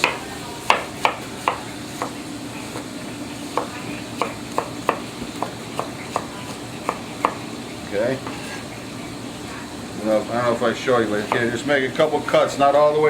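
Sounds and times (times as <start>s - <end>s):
knife chopping on cutting board: 0.0s - 2.9s, 3.5s - 7.4s
bacon sizzling in a pot: 0.0s - 13.0s.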